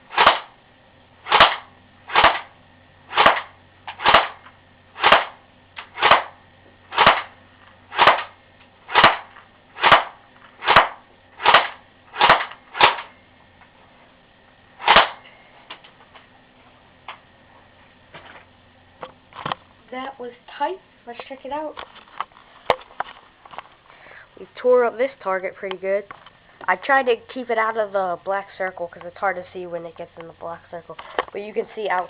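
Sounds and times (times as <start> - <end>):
airsoft gun shots: 0.1 - 0.6, 1.2 - 2.5, 3.1 - 13.1, 14.8 - 15.2.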